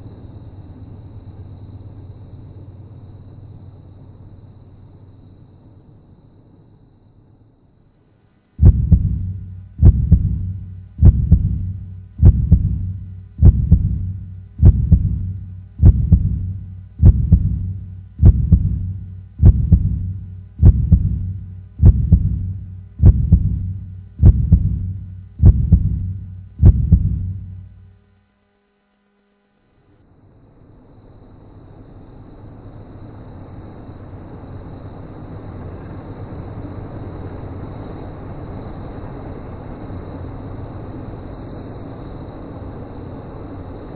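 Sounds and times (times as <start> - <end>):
deep heavy thumps: 8.6 - 27.7.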